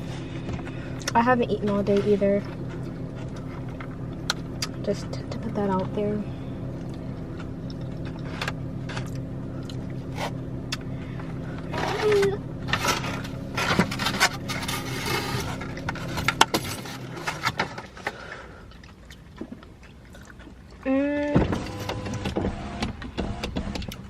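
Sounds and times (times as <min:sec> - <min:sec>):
low hum: 0:00.0 - 0:23.4
rustling: 0:11.0 - 0:18.4.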